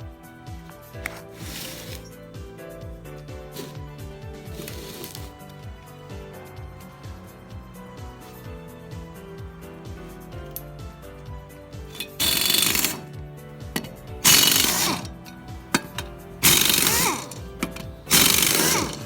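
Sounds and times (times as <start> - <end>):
background music with a beat: 0.0 - 19.0
air impact wrench hammering: 1.1 - 2.0, 3.5 - 5.4, 11.8 - 19.0.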